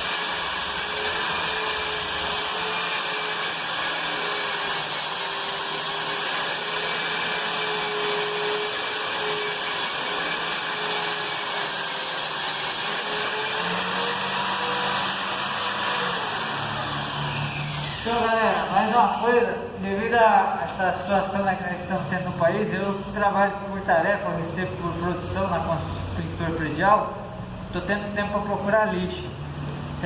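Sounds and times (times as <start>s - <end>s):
electric sander whirring hum: 13.6s - 19.5s.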